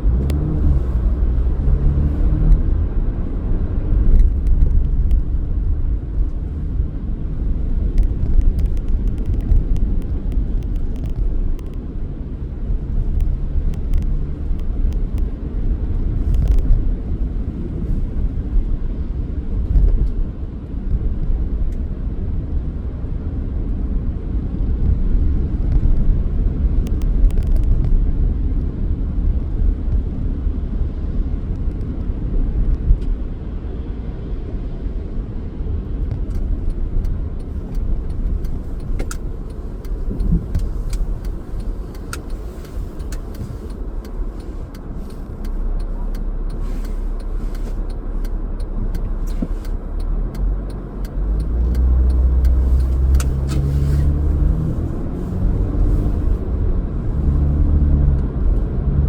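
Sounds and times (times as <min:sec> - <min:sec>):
car engine and road rumble: 0:00.0 - 0:59.0
sharp clicks and ticks: 0:07.7 - 0:11.9, 0:12.7 - 0:15.3, 0:16.2 - 0:16.8, 0:26.8 - 0:28.0, 0:35.9 - 0:55.2.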